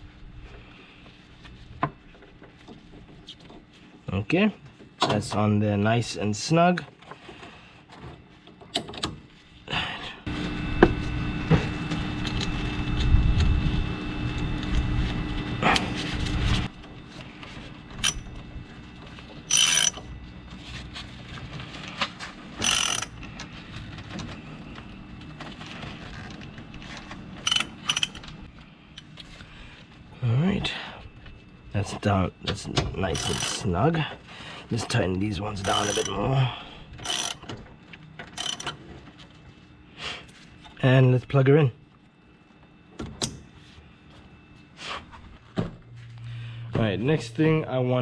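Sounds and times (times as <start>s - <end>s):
metal-on-metal working: 17.9s - 20.2s, 22.5s - 23.5s, 27.4s - 29.1s, 32.5s - 33.8s, 35.5s - 36.4s, 37.0s - 37.6s, 38.3s - 38.8s
ratchet wrench ratcheting: 18.0s - 18.3s, 19.5s - 20.1s, 22.6s - 23.2s, 27.4s - 28.2s, 33.1s - 33.6s, 35.6s - 36.2s, 37.0s - 37.4s, 38.4s - 38.7s.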